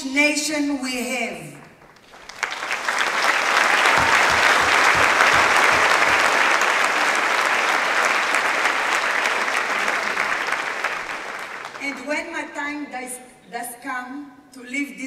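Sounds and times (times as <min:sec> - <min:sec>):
audience applauding: 0:01.7 - 0:12.1.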